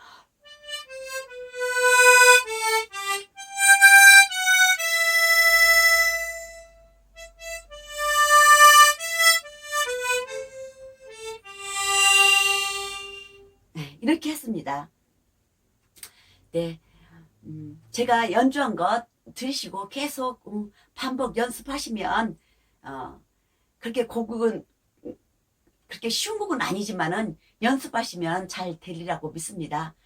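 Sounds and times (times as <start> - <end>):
harmonica playing slow melody: 0.0 - 13.6.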